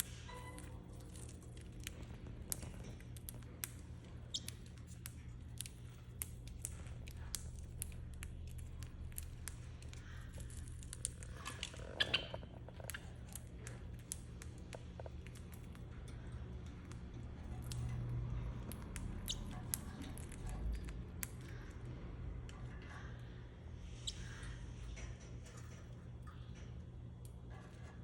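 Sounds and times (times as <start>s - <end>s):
parrot cracking seeds: 0.0s - 21.7s.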